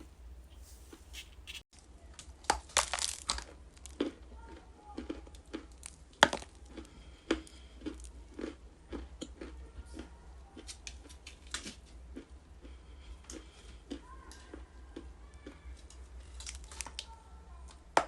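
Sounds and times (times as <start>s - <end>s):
clay crunching: 0.0s - 9.5s.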